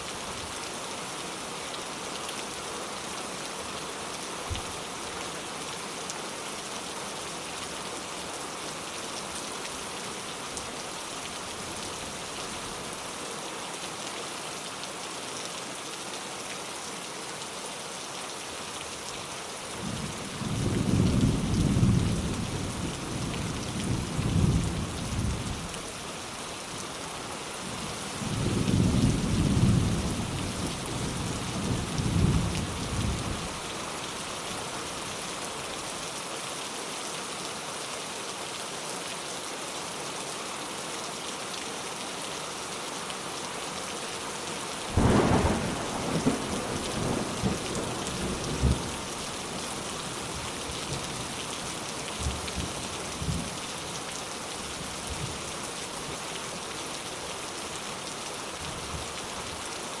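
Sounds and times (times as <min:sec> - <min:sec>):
steady rainfall: 0:00.0 - 1:00.0
thunder rumbling: 0:44.9 - 0:48.8.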